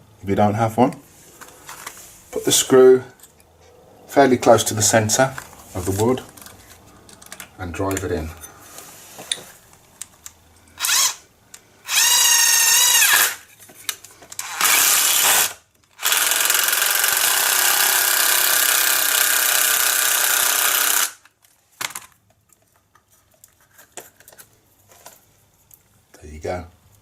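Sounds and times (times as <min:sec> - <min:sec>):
impact driver driving screw: 0:10.8 - 0:11.2, 0:11.9 - 0:13.4, 0:14.4 - 0:21.3.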